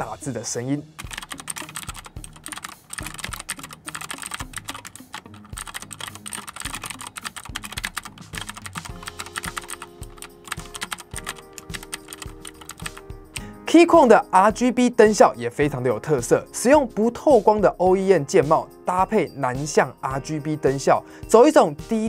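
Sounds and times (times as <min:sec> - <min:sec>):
mechanical keyboard typing: 0:01.0 - 0:13.4.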